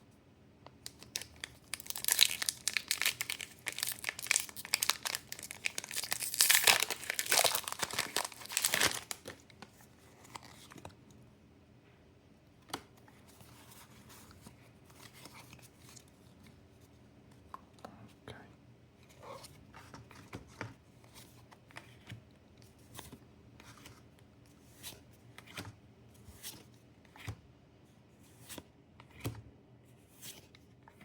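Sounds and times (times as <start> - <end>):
foil pack tearing and crinkling: 1.0 - 9.3.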